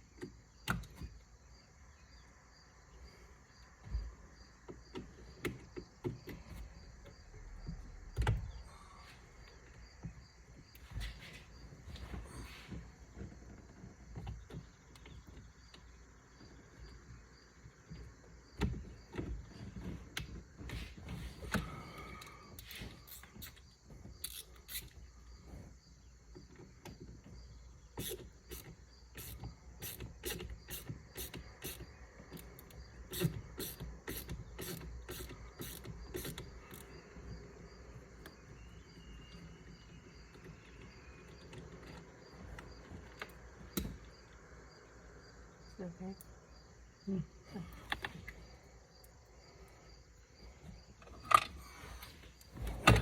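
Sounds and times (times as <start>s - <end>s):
ratchet clicking: 23.1s - 23.6s, 24.2s - 25.0s, 28.0s - 36.9s.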